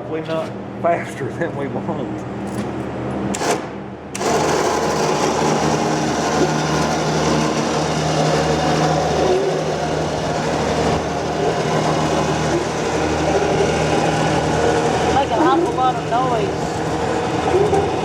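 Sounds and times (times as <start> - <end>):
elevator electric drive humming: 1.7 - 18.0.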